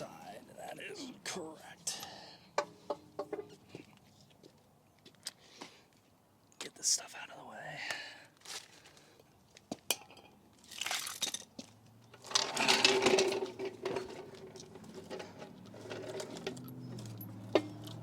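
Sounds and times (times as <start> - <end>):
clatter of tools and parts: 9.2 - 18.0.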